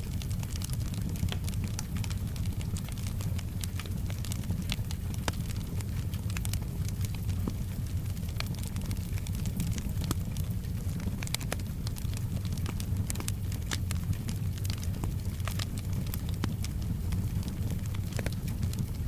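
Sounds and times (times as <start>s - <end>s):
low rumble of burning fire: 0.0s - 19.0s
wood fire crackling: 0.0s - 19.0s.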